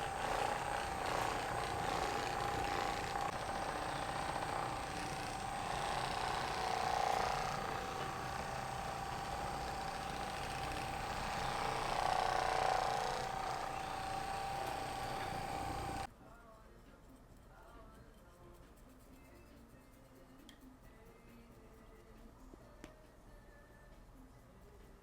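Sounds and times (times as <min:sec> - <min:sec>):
small electric motor whining: 0:00.0 - 0:16.1.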